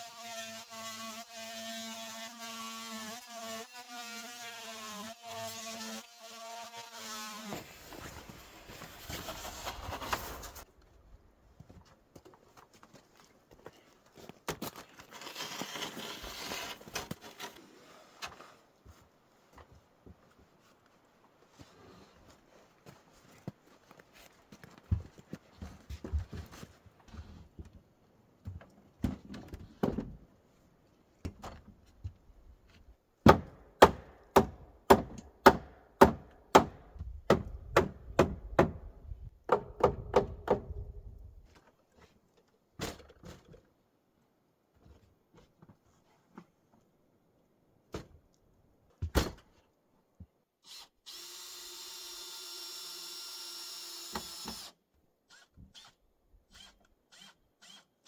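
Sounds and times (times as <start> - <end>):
hammer striking wood: 33.3 - 38.9, 39.5 - 40.7.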